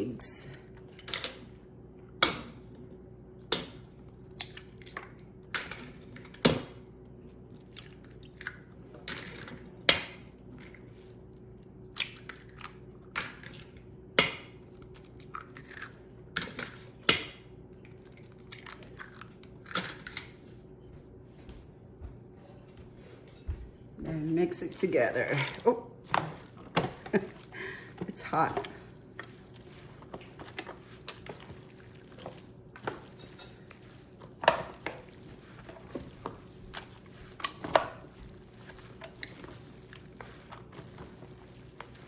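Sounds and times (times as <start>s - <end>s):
faint steady hum: 0.0s - 42.0s
eggshells cracking: 17.9s - 20.0s.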